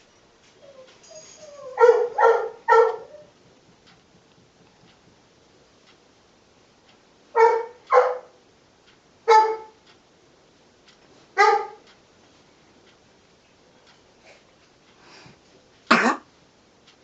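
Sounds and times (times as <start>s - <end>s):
hoarse honking coughs: 15.9s - 16.3s.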